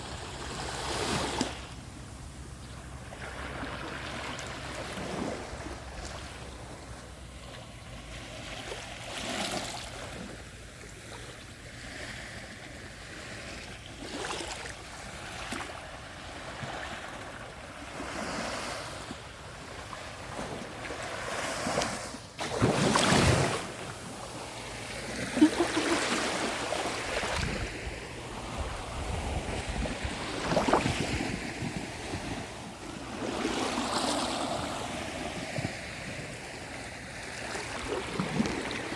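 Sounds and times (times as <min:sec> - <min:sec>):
sea waves washing up beach: 0:00.0 - 0:38.9
wind on microphone: 0:25.3 - 0:38.9.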